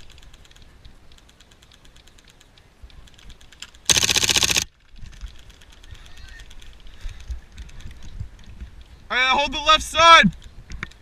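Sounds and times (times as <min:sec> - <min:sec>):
faint rapid airsoft gun clicking: 0:00.0 - 0:08.9
airsoft gun full-auto burst: 0:03.9 - 0:04.7.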